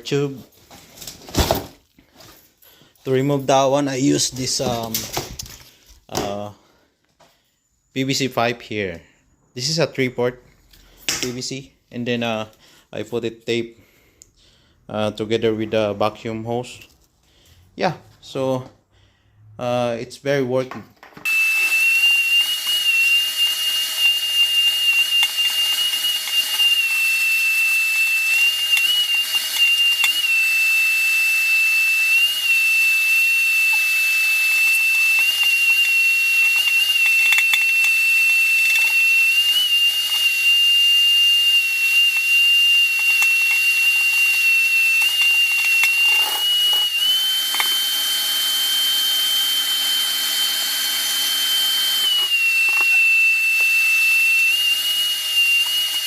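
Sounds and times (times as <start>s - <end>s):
vacuum cleaner whining: 21.2s - 56.0s.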